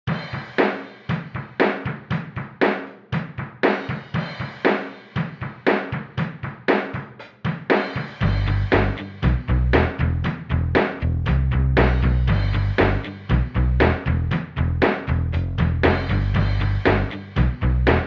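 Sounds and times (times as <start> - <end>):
drum kit beat: 0.1 - 18.0
deep bass line: 8.2 - 18.0.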